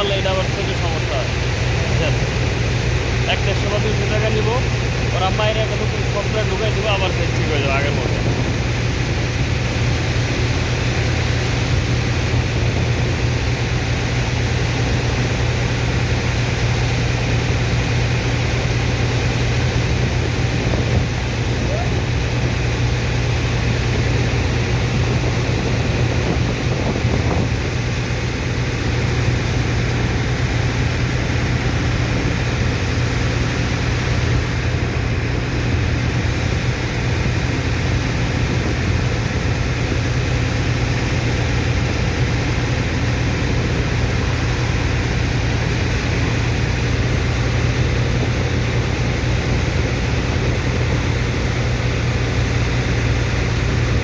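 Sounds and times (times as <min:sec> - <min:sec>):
diesel engine low drone: 0:00.0 - 0:54.0.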